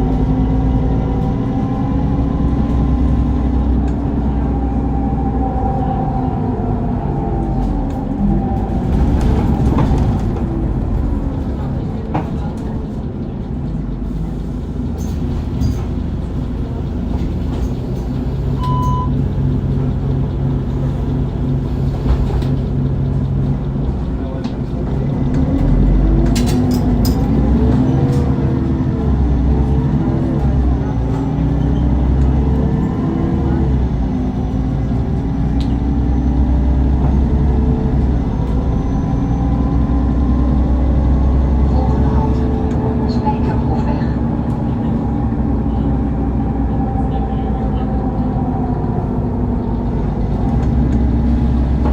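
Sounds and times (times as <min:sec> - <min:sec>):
bus engine running inside bus: 0:00.0 - 0:51.9
short beep: 0:18.6 - 0:19.2.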